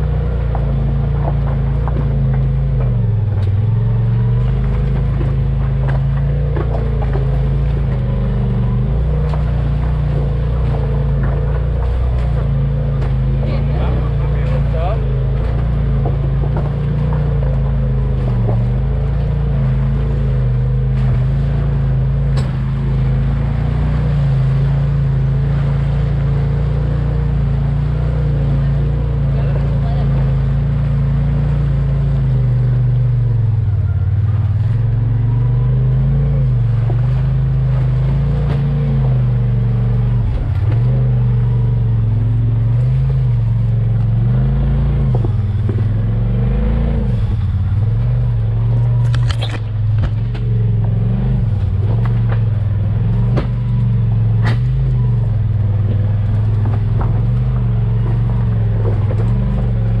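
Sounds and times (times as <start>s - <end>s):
sharp knocks and clatters: 0.0s - 19.5s, 51.6s - 55.0s
off-road vehicle engine: 0.0s - 60.0s.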